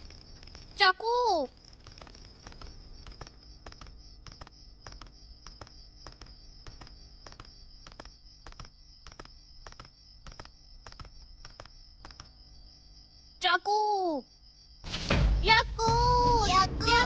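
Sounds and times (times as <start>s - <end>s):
crackling clicks: 0.0s - 12.5s
insects trilling: 0.0s - 17.0s.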